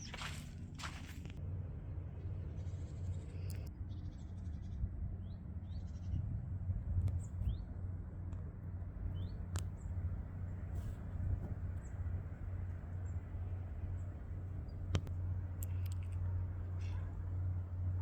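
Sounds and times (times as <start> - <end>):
small birds chirping: 9.0 - 18.0.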